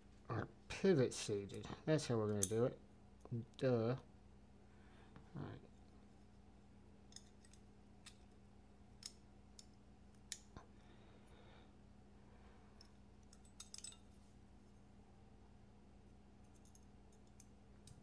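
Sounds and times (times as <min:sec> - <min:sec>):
light clicks of knife parts: 0:09.0 - 0:10.8, 0:12.8 - 0:14.0, 0:16.4 - 0:18.0.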